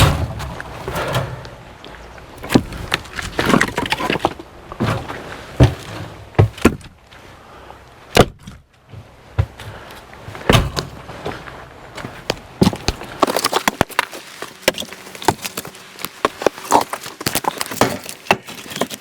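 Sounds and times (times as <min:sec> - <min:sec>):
firewood knocking together: 0:02.4 - 0:06.9.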